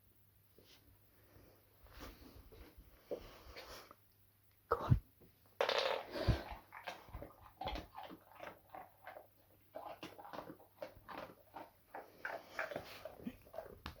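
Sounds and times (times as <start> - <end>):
dog chewing: 6.4 - 14.0.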